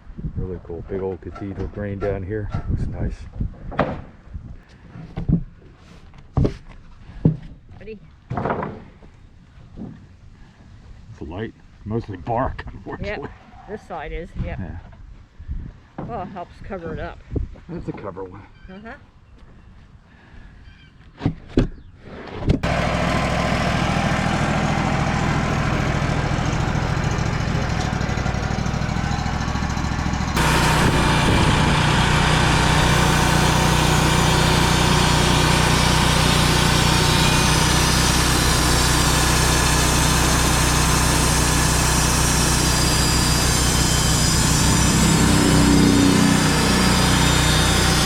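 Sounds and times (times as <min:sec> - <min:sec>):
sawmill engine running: 0:22.6 - 0:48.0.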